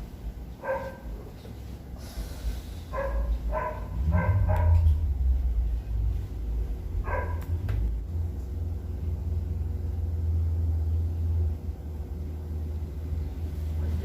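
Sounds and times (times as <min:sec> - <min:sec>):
steady low rumble: 0:00.0 - 0:14.0
dog barking: 0:00.6 - 0:01.2, 0:02.9 - 0:05.0, 0:07.0 - 0:07.5.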